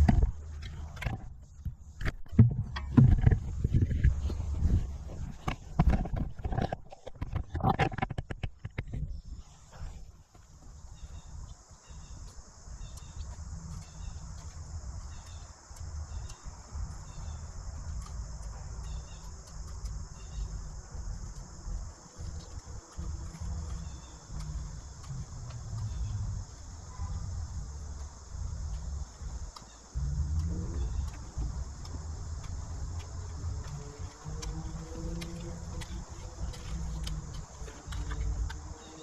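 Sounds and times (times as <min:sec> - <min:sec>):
crickets chirping: 0:08.7 - 0:39.0
high insect buzz: 0:10.8 - 0:39.0
low rumble: 0:29.9 - 0:33.7.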